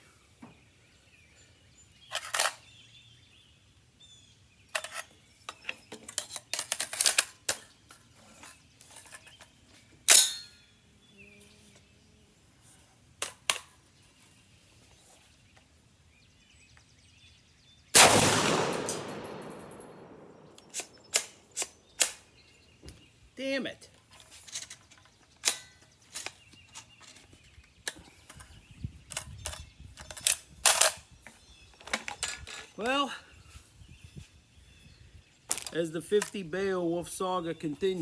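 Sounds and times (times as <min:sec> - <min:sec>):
rifle clicks being loaded: 0:02.1 - 0:02.6, 0:06.1 - 0:07.7, 0:18.0 - 0:22.2
loud rifle shot echoing: 0:18.0 - 0:21.3.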